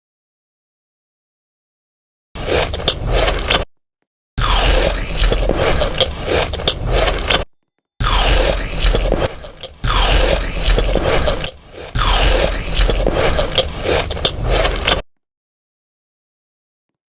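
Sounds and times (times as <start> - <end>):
person chewing crunchy food: 2.4 - 3.6, 4.4 - 7.4, 8.0 - 15.0.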